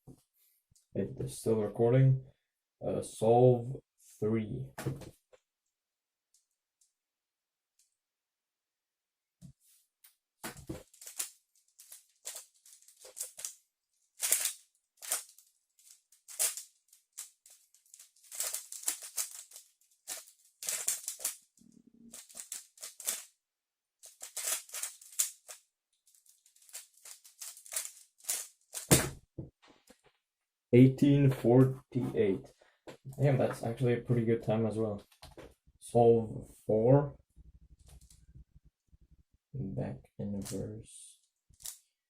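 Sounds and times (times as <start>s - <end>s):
plastic puzzle cube clicking: 14.2s - 21.4s, 24.0s - 25.6s
thump: 28.9s - 29.5s.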